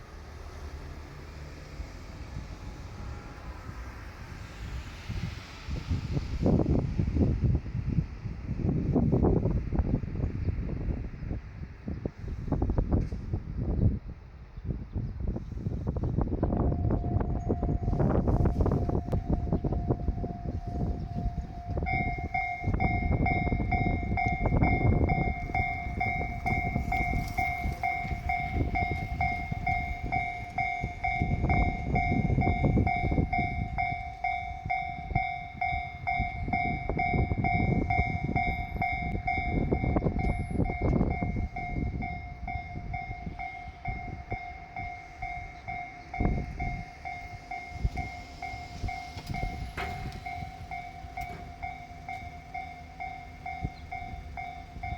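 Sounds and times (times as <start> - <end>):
train rumbling: 0.0 - 54.9
wheels clattering on rail joints: 16.6 - 54.9.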